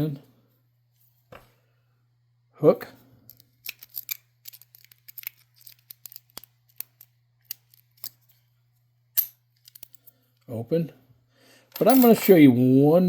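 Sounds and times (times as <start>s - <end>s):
lock pick clicking and scraping: 3.3s - 8.3s.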